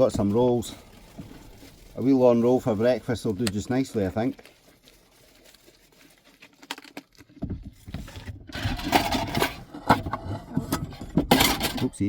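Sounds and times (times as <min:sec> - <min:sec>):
food crackling rustle: 0:00.0 - 0:09.6.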